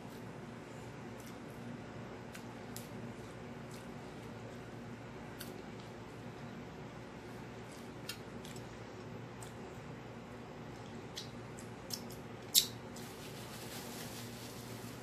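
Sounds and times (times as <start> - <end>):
low background hum: 0.0 - 15.0
chewing with wet mouth clicks: 10.8 - 12.7.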